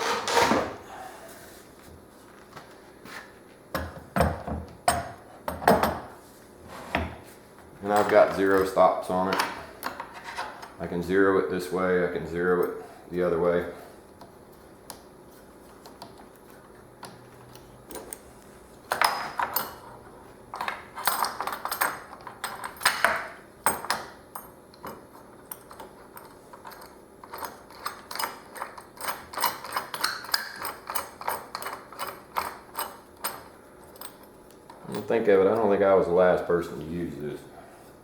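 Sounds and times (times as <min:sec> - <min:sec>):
metal parts clinking and rattling: 0:18.9 - 0:35.2.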